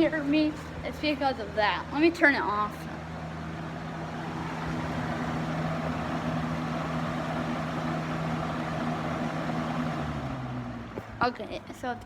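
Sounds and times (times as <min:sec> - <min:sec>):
motor droning: 0:00.0 - 0:12.0.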